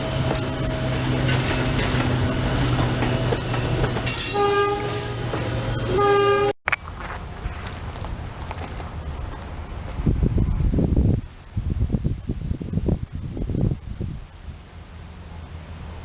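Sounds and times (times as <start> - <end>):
train wheel clatter: 0.0 - 5.9
electric train hum: 0.0 - 16.0
outdoor background noise: 0.0 - 16.0
train horn blasts: 4.1 - 6.6.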